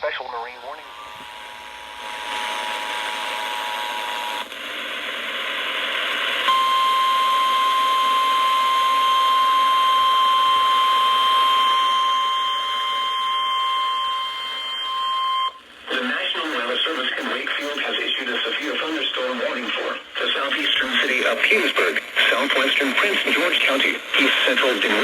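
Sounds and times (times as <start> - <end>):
radio hiss: 0.0 - 7.4, 15.5 - 25.0
two-tone attention signal: 6.5 - 15.6
steady warning alert tone: 10.0 - 21.2.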